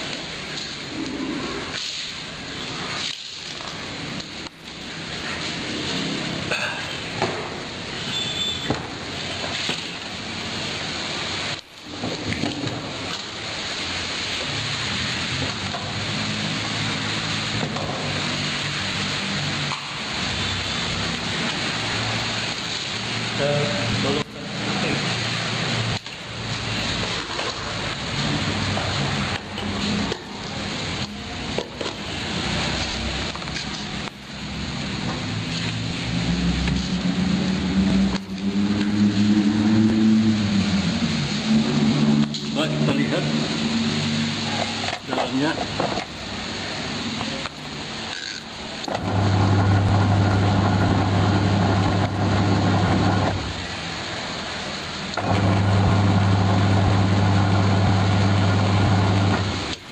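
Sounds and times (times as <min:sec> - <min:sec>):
water churning in washing machine: 0:08.8 - 0:59.9
low motor hum: 0:48.9 - 0:53.6, 0:55.2 - 0:59.6.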